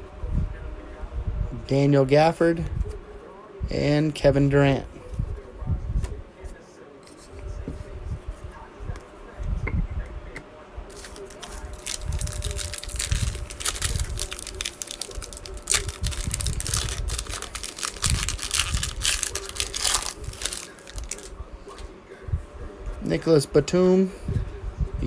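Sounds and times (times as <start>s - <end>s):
plastic wrapper tearing and crinkling: 10.9s - 21.3s.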